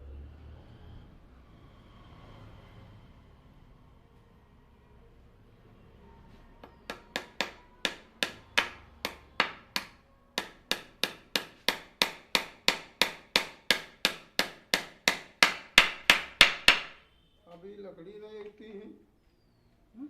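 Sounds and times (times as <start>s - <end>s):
hammer striking wooden chair: 6.6s - 17.0s.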